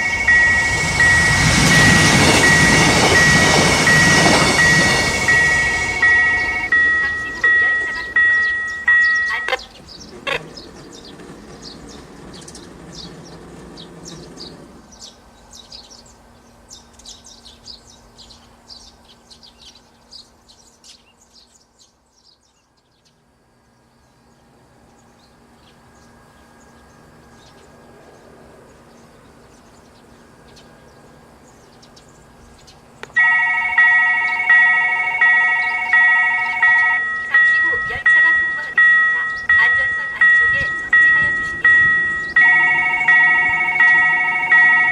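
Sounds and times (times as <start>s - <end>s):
railroad crossing bell ringing: 0.0s - 10.5s, 33.0s - 44.9s
birds chirping: 0.0s - 23.2s, 23.9s - 44.9s.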